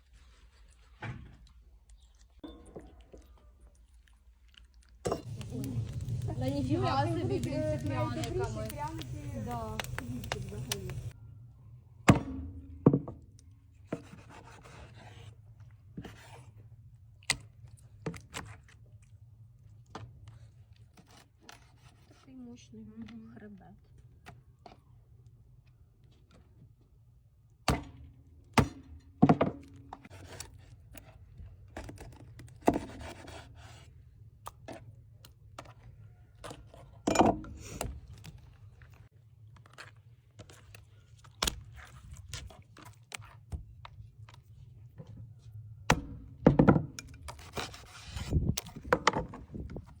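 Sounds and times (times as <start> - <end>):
steady low hum: 5.2 - 11.8.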